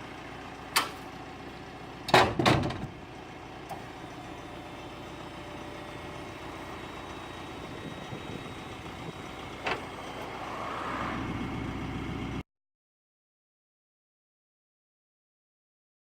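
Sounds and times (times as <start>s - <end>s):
diesel engine running: 0.0s - 12.4s.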